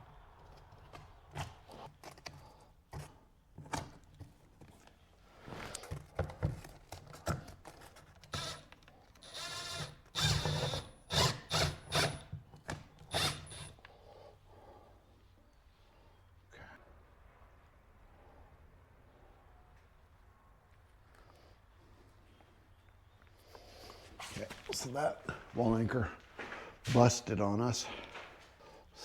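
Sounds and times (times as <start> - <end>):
knocks and handling clatter: 0.4 - 9.2
power drill bursts: 8.3 - 8.6, 9.2 - 13.8.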